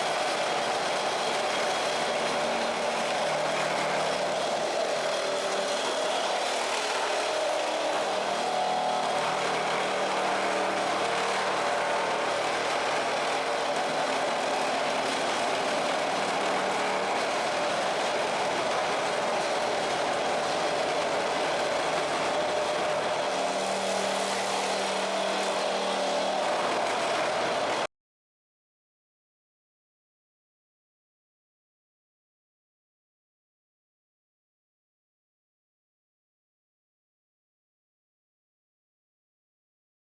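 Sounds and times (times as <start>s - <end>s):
floor scraper droning: 0.0s - 27.9s.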